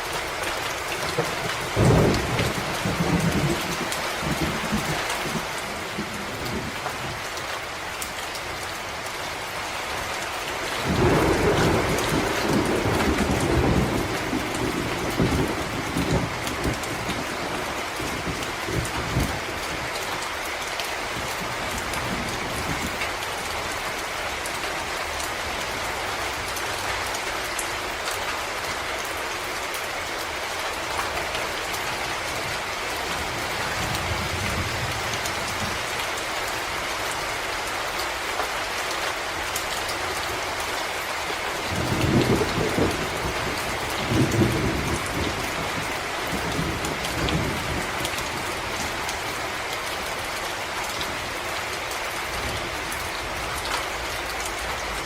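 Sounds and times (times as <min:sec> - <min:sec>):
steady rain on leaves: 0:00.0 - 0:55.0
deep thunder rumbles: 0:01.0 - 0:07.2, 0:10.8 - 0:19.8, 0:41.7 - 0:49.2.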